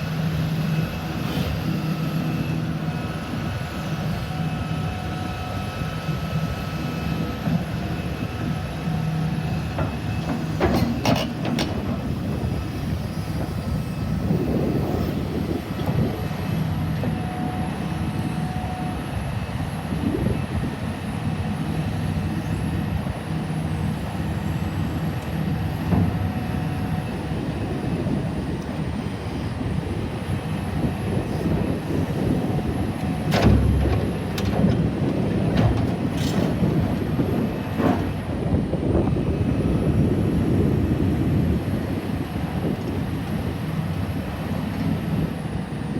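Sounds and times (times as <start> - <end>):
excavator diesel engine running: 0.0 - 45.9
heavy thump: 33.3 - 38.2.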